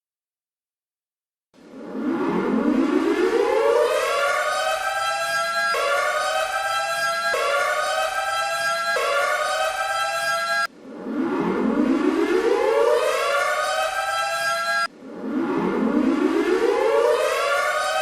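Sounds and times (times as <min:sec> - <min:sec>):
goal horn siren winding up: 0:03.1 - 0:10.7, 0:12.3 - 0:14.9, 0:16.3 - 0:18.0.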